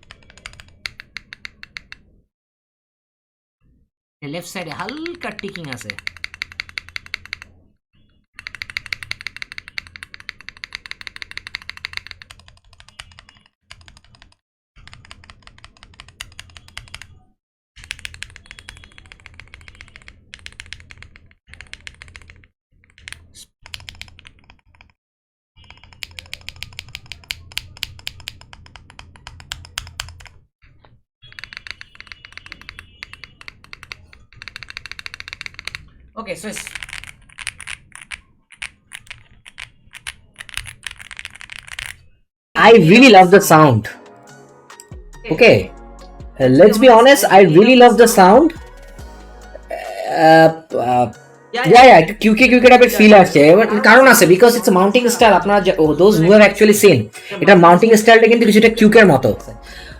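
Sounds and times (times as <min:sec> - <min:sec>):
keyboard typing: 0:00.0 - 0:02.1, 0:04.5 - 0:07.6, 0:08.4 - 0:25.0, 0:25.6 - 0:30.5, 0:31.2 - 0:35.9, 0:36.5 - 0:42.1.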